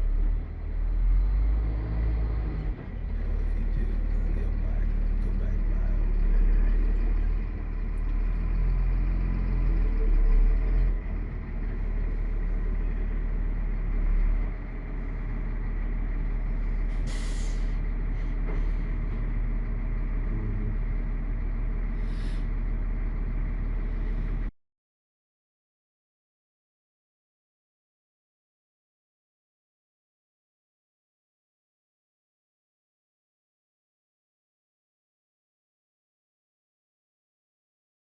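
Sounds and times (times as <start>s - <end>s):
vehicle engine rumbling: 0.0s - 24.5s
brief hisses: 16.9s - 17.8s.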